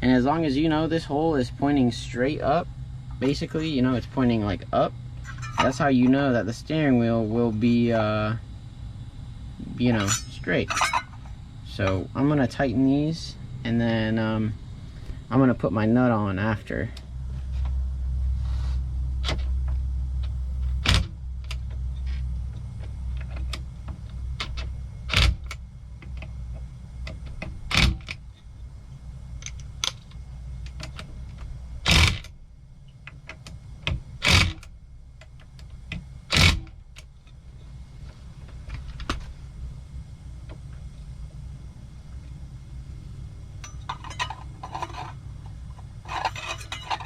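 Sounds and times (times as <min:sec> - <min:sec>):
steady low hum: 0:00.0 - 0:47.0
sharp metal clinks: 0:05.2 - 0:05.9, 0:09.9 - 0:11.3
metal tools ticking and rattling: 0:05.2 - 0:06.2, 0:09.9 - 0:11.3, 0:43.6 - 0:47.0.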